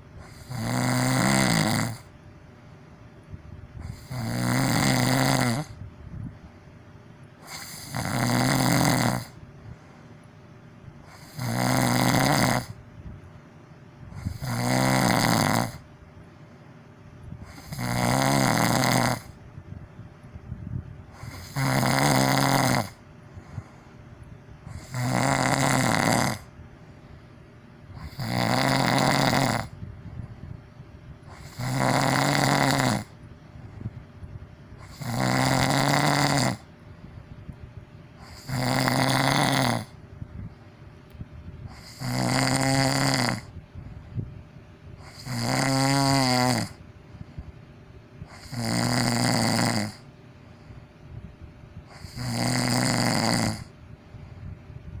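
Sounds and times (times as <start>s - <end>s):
person snoring loudly: 0.2s - 2.1s, 3.8s - 5.8s, 7.4s - 9.4s, 11.0s - 12.8s, 14.1s - 15.9s, 17.4s - 19.4s, 21.1s - 23.7s, 24.7s - 26.5s, 27.9s - 29.8s, 31.3s - 33.2s, 34.8s - 36.7s, 38.2s - 40.0s, 41.7s - 43.6s, 45.0s - 46.8s, 48.3s - 50.1s, 51.9s - 53.8s.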